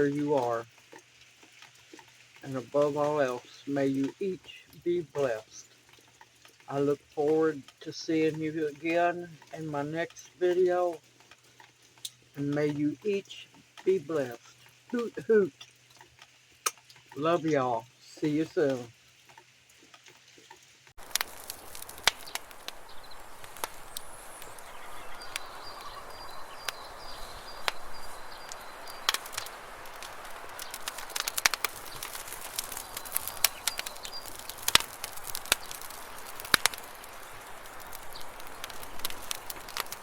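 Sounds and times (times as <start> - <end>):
drops dripping onto surfaces: 0.0 - 40.0
steady rain: 0.0 - 40.0.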